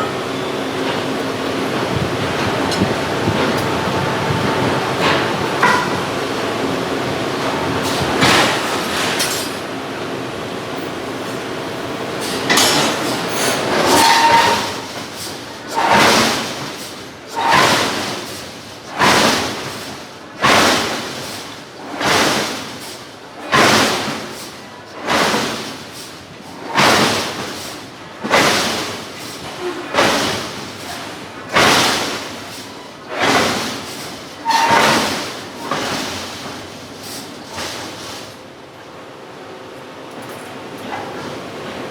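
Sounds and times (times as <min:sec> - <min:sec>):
steady machine noise: 0:00.0 - 0:17.5
forging hammer striking steel: 0:05.0 - 0:06.2, 0:12.3 - 0:14.9.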